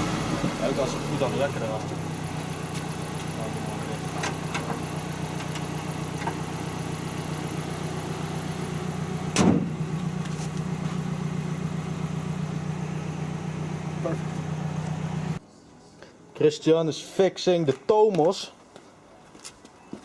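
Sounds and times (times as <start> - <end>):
car engine idling: 0.0 - 15.4.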